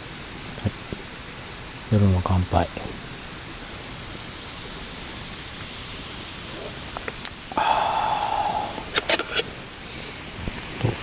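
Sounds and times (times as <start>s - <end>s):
fizzing hiss: 2.9s - 10.8s
drink can tab clicking open: 8.8s - 9.5s.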